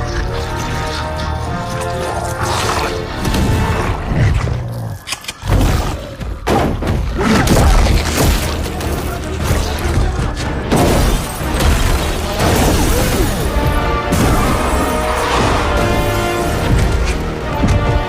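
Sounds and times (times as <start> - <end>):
film music: 0.0 - 18.0.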